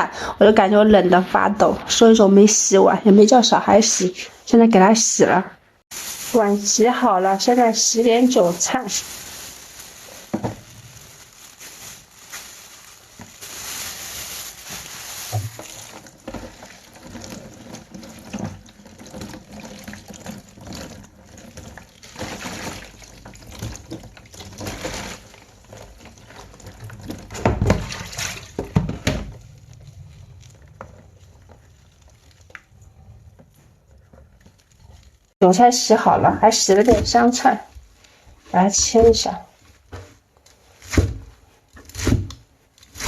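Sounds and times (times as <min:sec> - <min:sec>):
tap water running into sink: 0:15.5 - 0:24.5.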